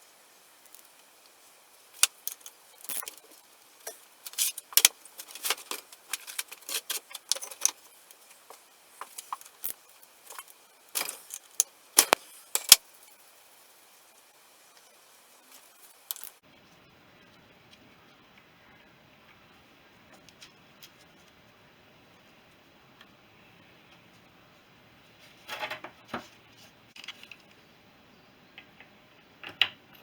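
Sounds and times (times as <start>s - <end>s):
metal tools clinking and rattling: 3.8s - 7.9s, 10.3s - 12.8s.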